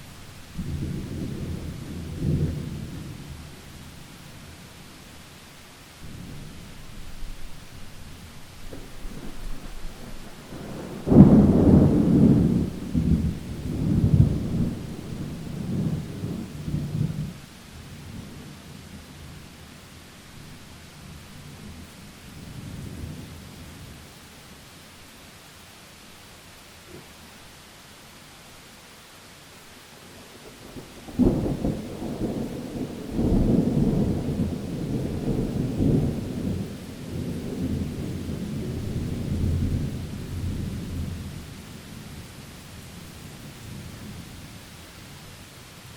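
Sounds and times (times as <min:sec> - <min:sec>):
rain hissing: 0:00.0 - 0:45.9
thunder crack and rumble: 0:00.6 - 0:03.6, 0:08.6 - 0:17.4, 0:30.7 - 0:41.6.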